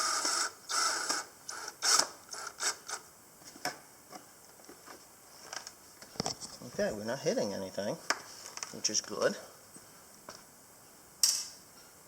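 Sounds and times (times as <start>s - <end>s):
cordless drill whirring: 0.0s - 3.0s.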